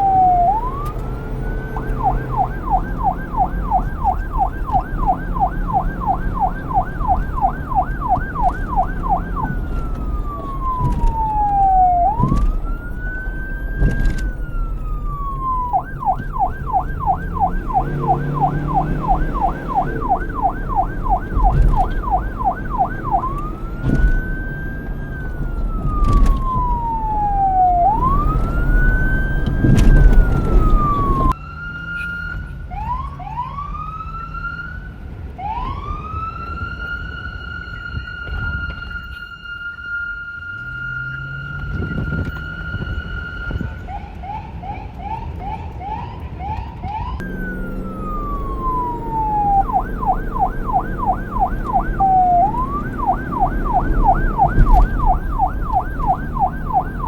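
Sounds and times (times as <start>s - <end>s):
siren rising in short sweeps: 0.0s - 32.9s, 47.2s - 57.0s
police siren yelp and wail: 0.0s - 57.0s
vehicle and street rumble: 0.0s - 57.0s.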